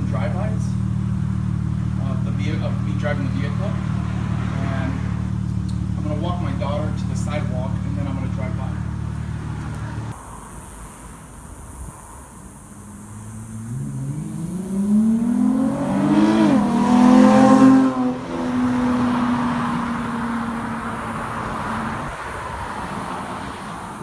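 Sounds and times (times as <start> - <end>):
car engine accelerating past: 3.3 - 5.8, 12.9 - 23.5.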